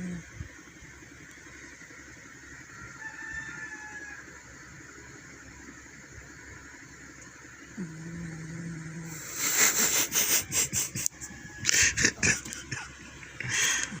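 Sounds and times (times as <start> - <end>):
cat snoring: 7.8 - 10.7.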